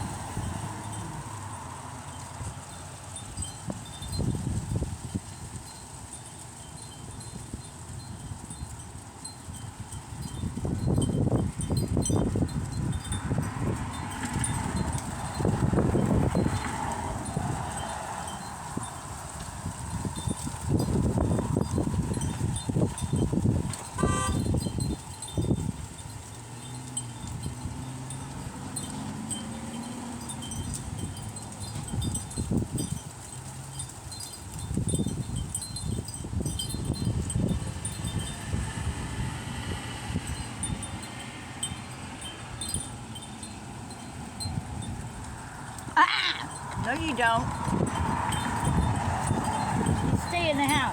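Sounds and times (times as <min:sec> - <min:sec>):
gusty wind buffeting microphone: 0:00.0 - 0:50.9.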